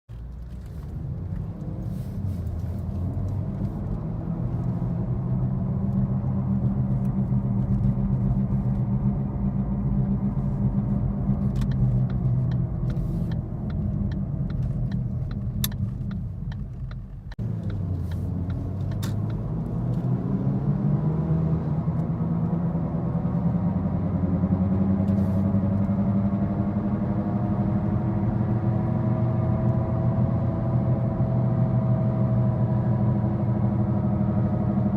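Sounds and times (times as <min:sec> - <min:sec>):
low drone inside car cabin: 0:00.9 - 0:34.9.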